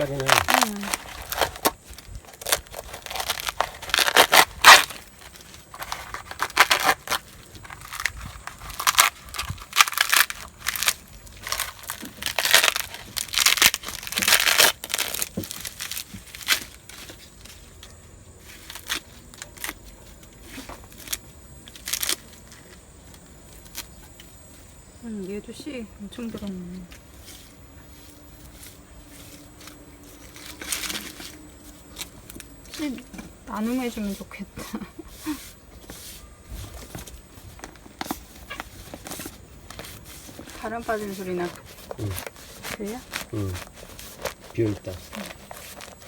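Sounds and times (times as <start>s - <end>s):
dry loofah skin crackling and tearing: 0.0s - 24.2s, 38.1s - 46.0s.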